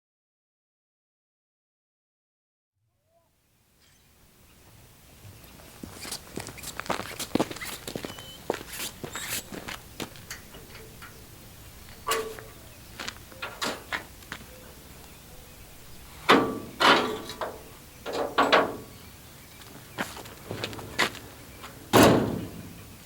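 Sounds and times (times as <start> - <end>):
scraping clunks: 5.9 - 23.0.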